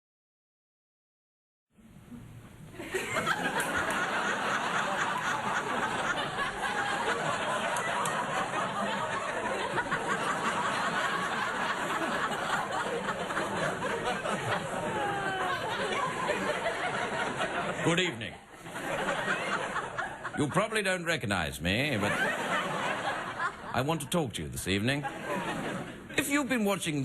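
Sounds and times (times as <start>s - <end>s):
audience laughing: 2.8s - 20.8s, 21.8s - 24.1s, 24.8s - 26.5s
audience applauding and cheering: 14.6s - 16.1s.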